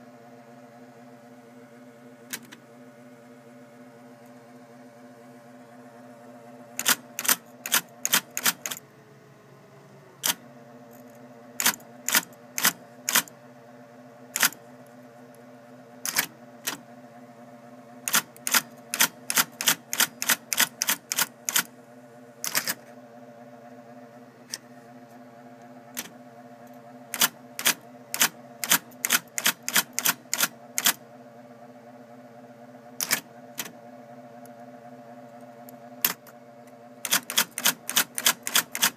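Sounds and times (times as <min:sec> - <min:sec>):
typewriter motor hum: 0:02.1 - 0:03.1, 0:03.7 - 0:09.0, 0:09.6 - 0:13.4, 0:14.1 - 0:31.0, 0:32.6 - 0:38.9
typewriter key strikes: 0:06.8 - 0:08.8, 0:11.6 - 0:13.3, 0:14.4 - 0:14.6, 0:16.1 - 0:16.8, 0:18.1 - 0:21.7, 0:22.4 - 0:22.8, 0:27.2 - 0:31.0, 0:33.0 - 0:33.7, 0:37.0 - 0:38.9.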